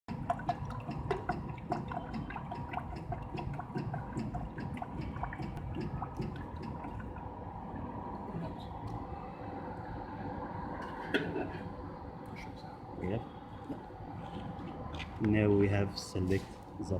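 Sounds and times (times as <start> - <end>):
liquid dripping and splashing: 0.1 - 7.9.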